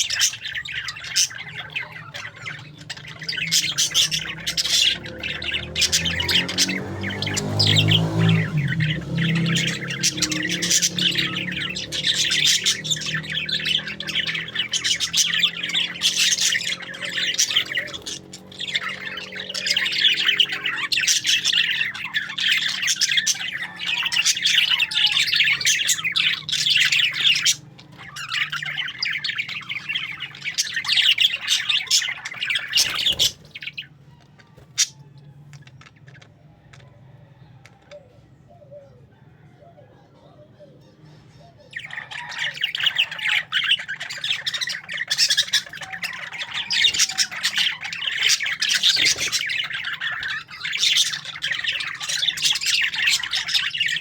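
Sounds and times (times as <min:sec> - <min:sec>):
parakeets chirping and squawking: 0:00.0 - 0:54.0.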